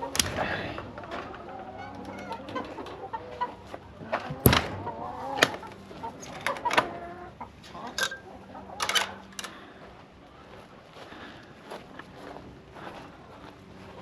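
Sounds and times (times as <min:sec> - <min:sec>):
chickens clucking: 0:00.0 - 0:10.7.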